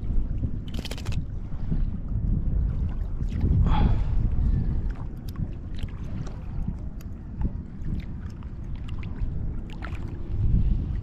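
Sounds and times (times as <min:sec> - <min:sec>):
wind buffeting microphone: 0:00.0 - 0:11.0
small clicks and splashes: 0:00.6 - 0:01.3.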